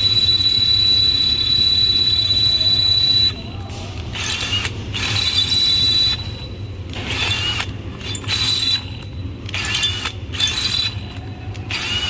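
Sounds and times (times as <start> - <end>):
steady low hum: 0.0 - 12.0
drill bit squealing in metal: 4.2 - 6.4, 7.0 - 11.1, 11.7 - 12.0.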